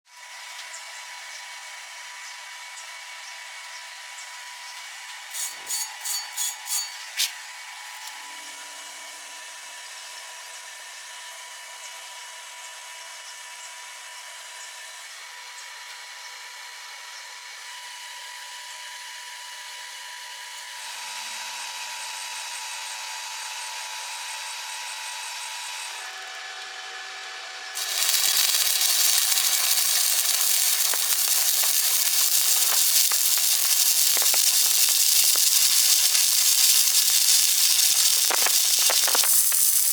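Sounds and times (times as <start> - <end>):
welding arc sizzling: 5.3 - 7.3, 27.8 - 39.9
machine whining: 27.8 - 39.9
sharp clicks: 27.8 - 39.9.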